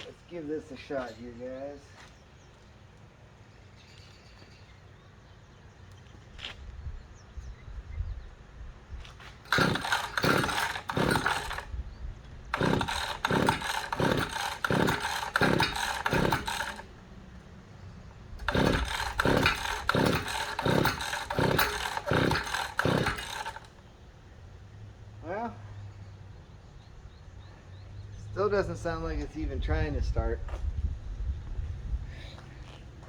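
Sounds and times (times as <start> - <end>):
small engine being pull-started: 9.2 - 11.7, 12.5 - 17.0, 18.4 - 23.8.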